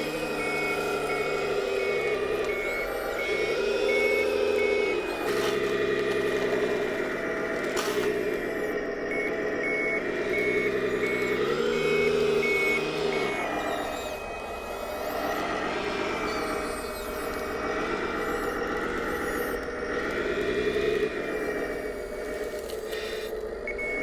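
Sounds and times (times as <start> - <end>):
simulated diesel engine revving: 0.0 - 14.0
electronic reversing beeps: 0.0 - 19.6.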